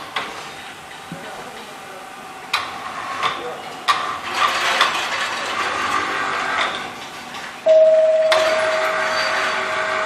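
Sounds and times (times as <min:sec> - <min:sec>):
machine whine: 0:07.6 - 0:10.0
workshop machine hissing: 0:08.5 - 0:10.0.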